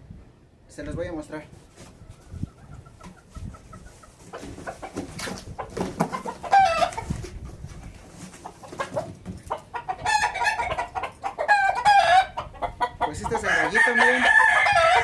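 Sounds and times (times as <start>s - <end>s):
chickens calling: 1.4s - 15.0s
knocks and rustling: 4.2s - 9.5s.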